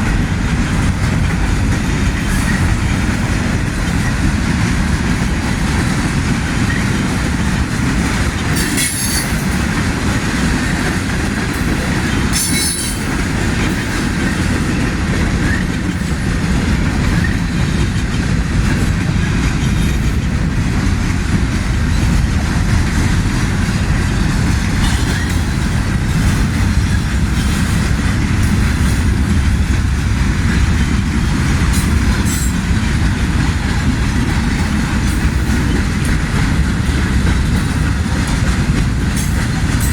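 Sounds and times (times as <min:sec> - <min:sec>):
freight train rumbling past: 0:00.0 - 0:39.9
train wheels squealing: 0:02.2 - 0:02.8, 0:08.4 - 0:09.6, 0:11.6 - 0:16.1.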